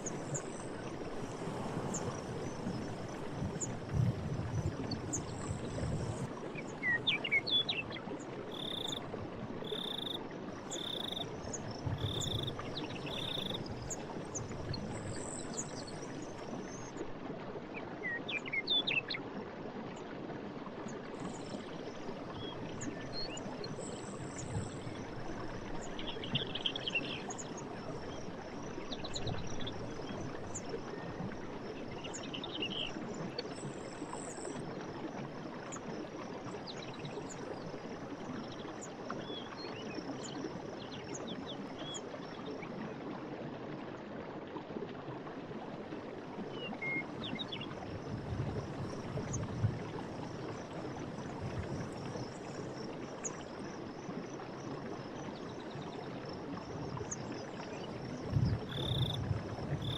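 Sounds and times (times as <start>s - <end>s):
stream rushing: 0.0s - 5.9s.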